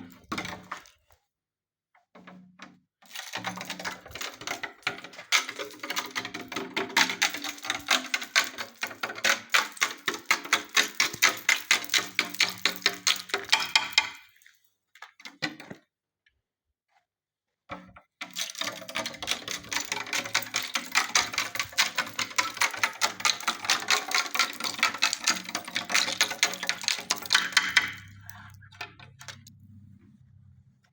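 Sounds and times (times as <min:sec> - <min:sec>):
ice-glazed branches clinking: 0:03.1 - 0:14.6, 0:18.4 - 0:29.5.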